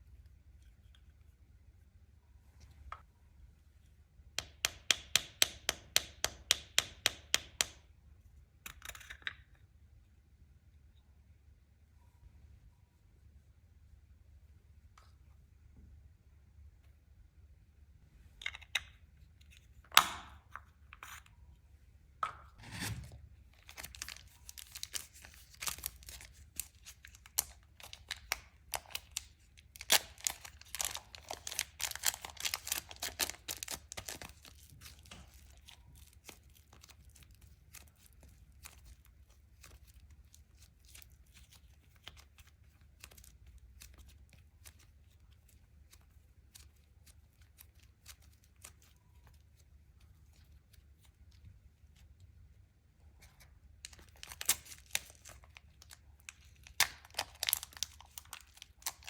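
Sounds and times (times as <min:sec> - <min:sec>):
slime crackling and popping: 0:23.8 - 0:38.9, 0:53.9 - 0:59.0.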